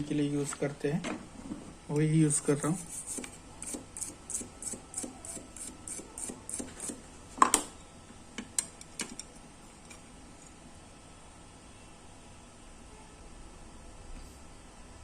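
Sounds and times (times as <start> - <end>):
toothbrush scrubbing circuit board: 2.6 - 7.0.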